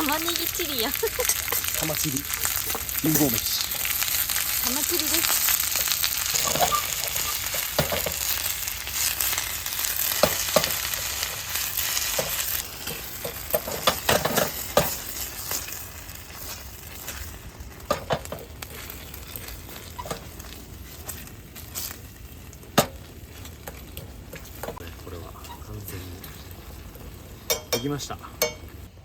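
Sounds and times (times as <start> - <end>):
food sizzling in frying pan: 0.0 - 29.0
utensil scraping pan: 2.4 - 17.3, 17.9 - 22.0.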